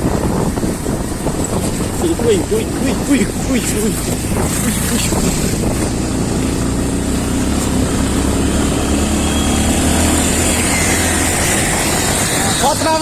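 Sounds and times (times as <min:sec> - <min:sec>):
motorcycle engine running: 0:00.0 - 0:13.0
wind and road noise: 0:00.0 - 0:13.0.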